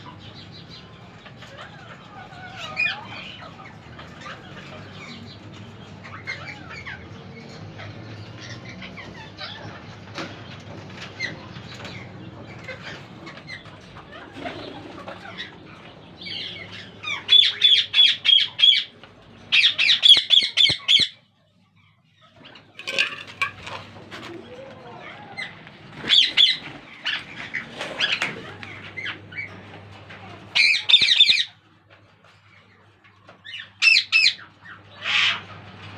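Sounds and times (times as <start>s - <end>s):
parakeets squawking: 0.0s - 31.6s, 32.3s - 35.9s
scratching: 22.2s - 32.4s.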